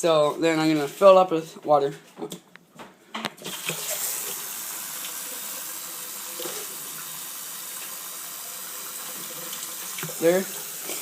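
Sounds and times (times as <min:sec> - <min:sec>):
tap water filling a container: 0:03.4 - 0:11.0.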